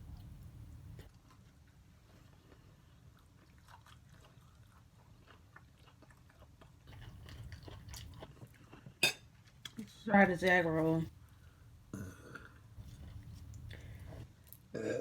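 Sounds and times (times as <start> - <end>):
person chewing: 2.2 - 9.7.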